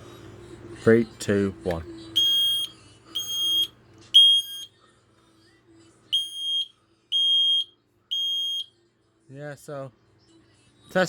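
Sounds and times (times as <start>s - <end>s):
smoke alarm beeping: 2.2s - 4.7s, 6.2s - 8.7s.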